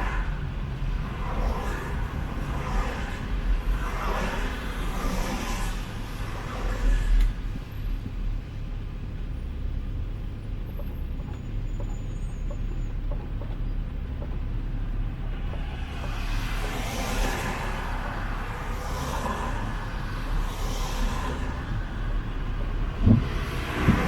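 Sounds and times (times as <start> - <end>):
tyres hissing on wet road: 0.0 - 8.8, 15.0 - 24.0
vehicles passing engine rumble: 0.0 - 24.0.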